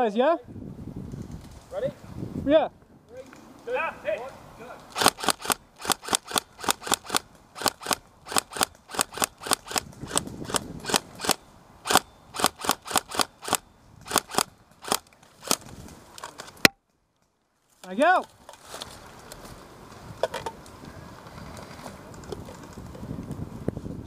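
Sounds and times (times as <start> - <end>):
airsoft gun shots cracking: 4.9 - 15.0.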